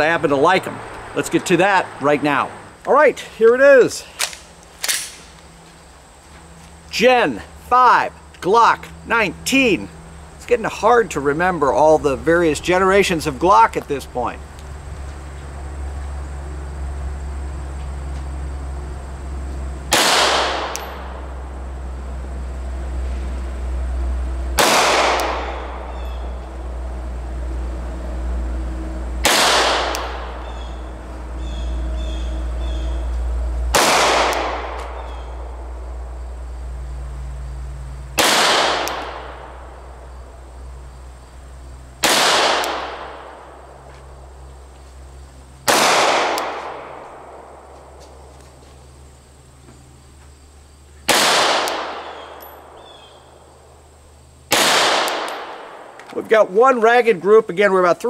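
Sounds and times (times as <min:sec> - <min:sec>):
pistol shots with echo: 0:19.9 - 0:21.1, 0:24.6 - 0:26.0, 0:29.2 - 0:30.6, 0:33.7 - 0:35.0, 0:38.2 - 0:39.5, 0:42.0 - 0:43.4, 0:45.7 - 0:47.6, 0:51.1 - 0:52.8, 0:54.5 - 0:55.9.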